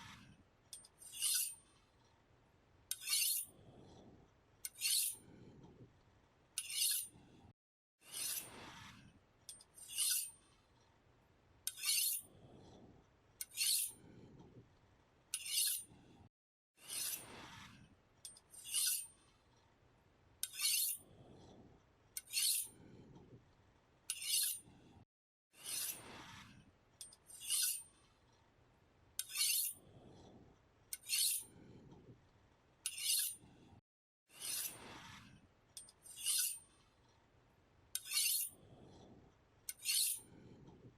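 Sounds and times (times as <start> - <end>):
knife being sharpened: 0.8 - 1.6, 2.9 - 3.5, 4.7 - 5.2, 6.6 - 7.1, 9.8 - 10.4, 11.7 - 12.3, 13.4 - 14.0, 15.4 - 15.9, 18.6 - 19.1, 20.4 - 21.0, 22.2 - 22.7, 24.1 - 24.6, 27.3 - 27.9, 29.2 - 29.8, 31.0 - 31.5, 32.8 - 33.4, 34.3 - 34.8, 35.8 - 36.6, 38.0 - 38.6, 39.7 - 40.2.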